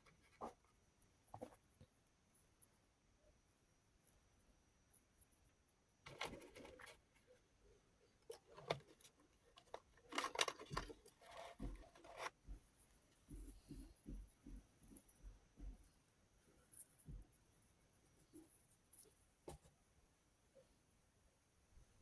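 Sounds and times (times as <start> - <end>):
small hard parts clicking and rattling: 8.3 - 12.5.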